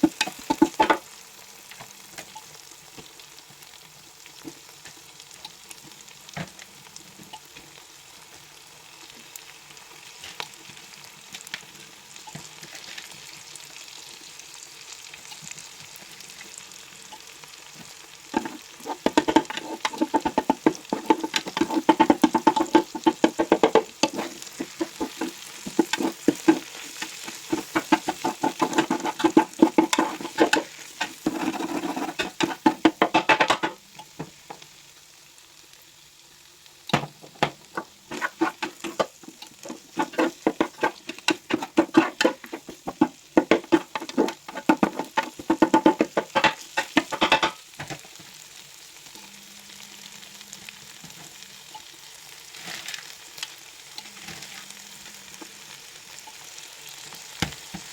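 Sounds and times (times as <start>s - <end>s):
spatula scraping frying pan: 0.0s - 1.2s, 15.3s - 34.6s, 37.2s - 48.2s, 50.1s - 57.9s
rice sizzling: 0.0s - 57.9s.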